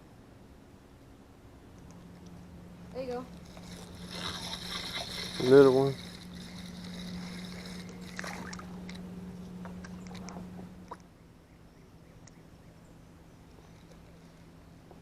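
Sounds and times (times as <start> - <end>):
small motor humming: 2.9 - 10.9.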